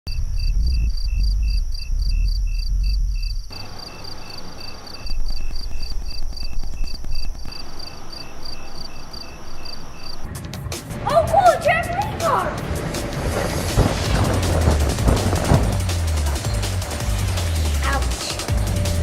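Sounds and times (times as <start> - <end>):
low rumble: 0.1 - 3.8, 10.2 - 17.8
crickets chirping: 0.1 - 10.4.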